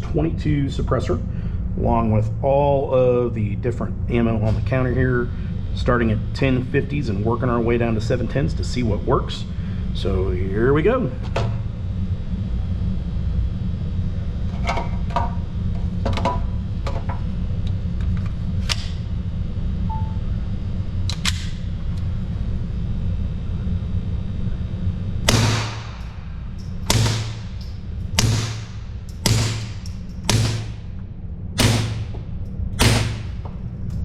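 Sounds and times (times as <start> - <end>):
steady low rumble: 0.0 - 34.0
suppressed pistol shots: 25.3 - 26.1, 26.8 - 30.7, 31.6 - 32.1, 32.8 - 33.4.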